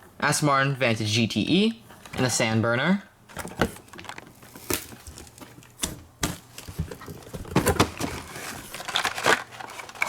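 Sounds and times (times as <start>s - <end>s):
plastic packaged toy cars clicking: 7.8s - 10.0s.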